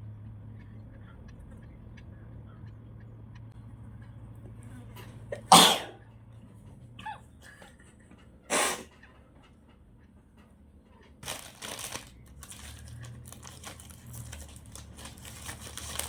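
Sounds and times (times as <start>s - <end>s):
person sneezing: 5.4s - 6.0s, 8.5s - 8.9s
rustling: 11.0s - 16.0s.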